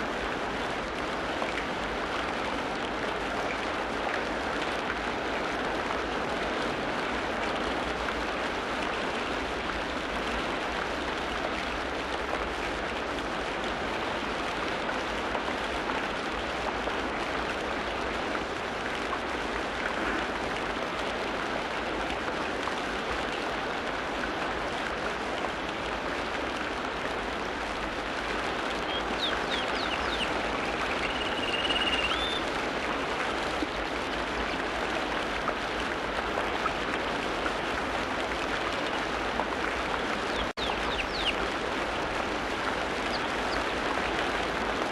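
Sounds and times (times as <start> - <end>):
rain pattering: 0.0 - 44.9
high bird chirps: 28.9 - 32.4.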